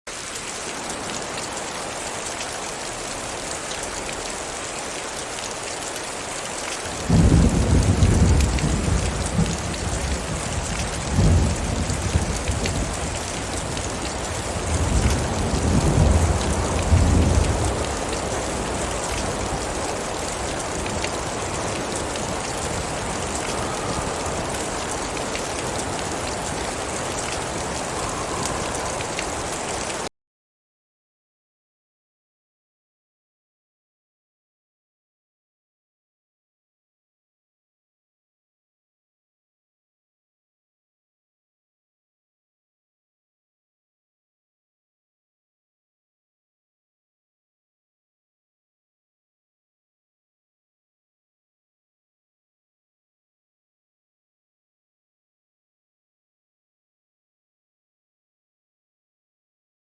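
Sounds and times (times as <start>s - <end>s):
steady rain: 0.1s - 30.1s
thunder rumbling: 6.9s - 30.1s.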